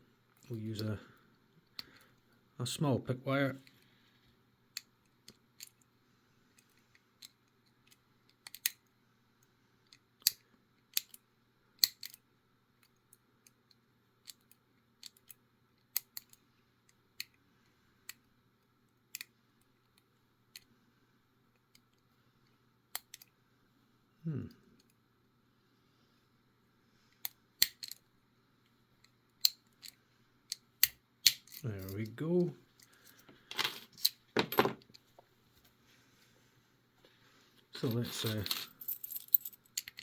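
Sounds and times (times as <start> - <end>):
lock pick clicking in padlock: 11.8 - 12.2.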